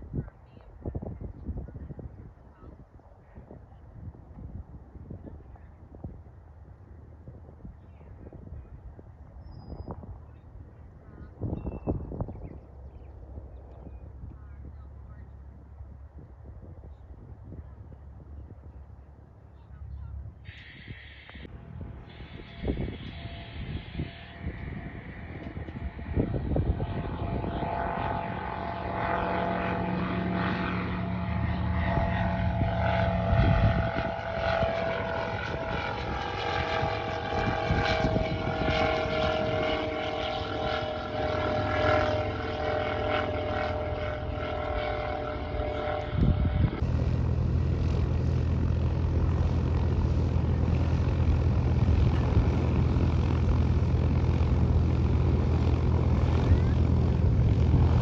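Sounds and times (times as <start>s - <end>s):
propeller airplane engine: 3.4s - 58.0s.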